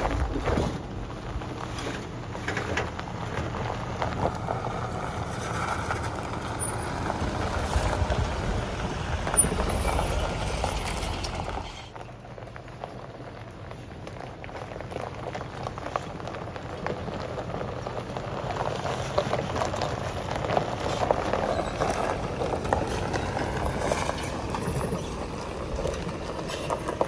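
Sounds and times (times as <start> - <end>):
vehicle engine and road noise: 0.0 - 27.0.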